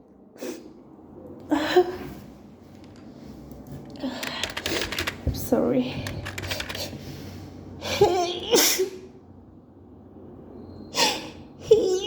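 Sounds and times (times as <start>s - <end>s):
woman sneezing: 8.2s - 9.0s.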